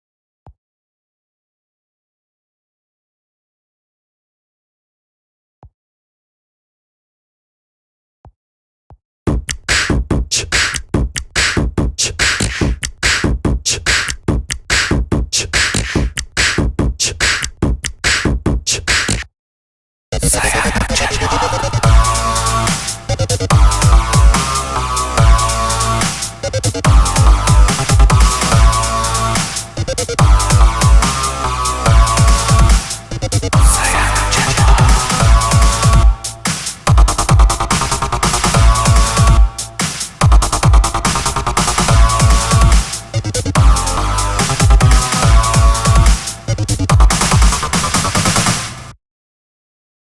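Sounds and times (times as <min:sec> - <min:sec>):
phone ringtone electronic beat: 0:20.2 - 0:47.7.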